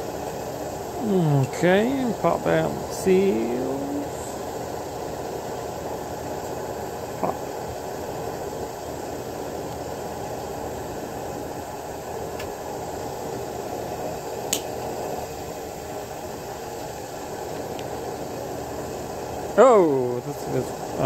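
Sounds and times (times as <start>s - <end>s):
low hum and hiss: 0.0s - 21.0s.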